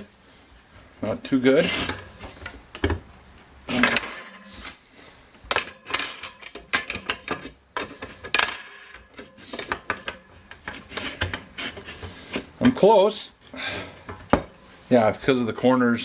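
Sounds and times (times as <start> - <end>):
wire rack scraping metal pan: 1.4 - 2.2, 3.7 - 4.8, 5.5 - 12.8.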